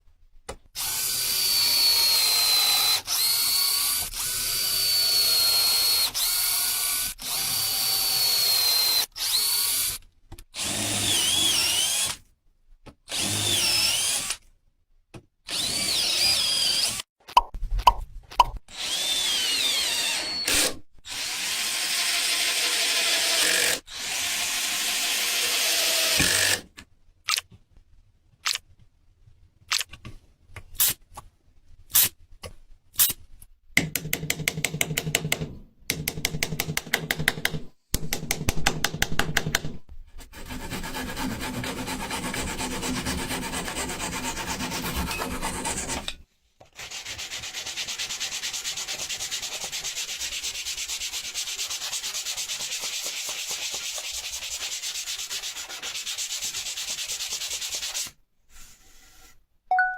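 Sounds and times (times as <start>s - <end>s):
sanding rasp: 40.3s - 46.1s, 46.8s - 59.4s.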